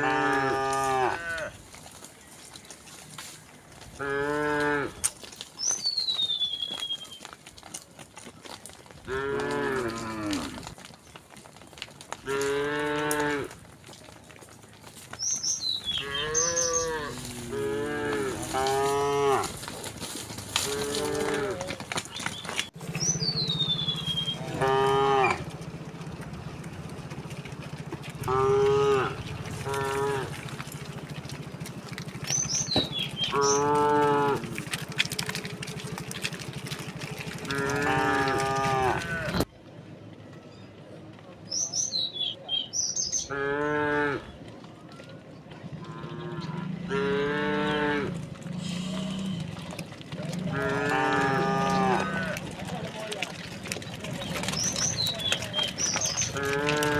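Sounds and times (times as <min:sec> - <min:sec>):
cattle mooing: 0:00.0 - 0:01.6, 0:04.0 - 0:05.0, 0:09.0 - 0:10.8, 0:12.2 - 0:13.6, 0:15.9 - 0:19.9, 0:20.6 - 0:21.8, 0:22.9 - 0:39.4, 0:43.3 - 0:44.3, 0:45.8 - 0:56.9.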